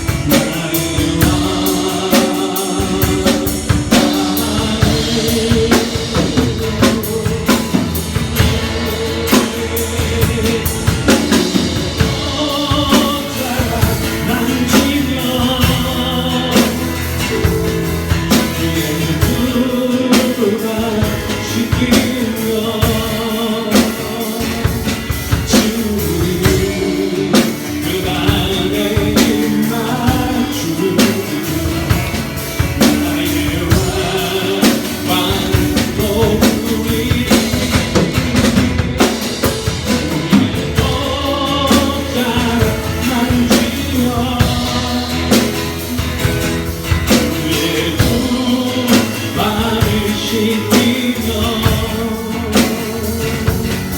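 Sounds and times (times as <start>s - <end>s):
band playing worship song: 0.0s - 53.9s
drum hits: 0.0s - 53.9s
person singing: 0.0s - 53.9s.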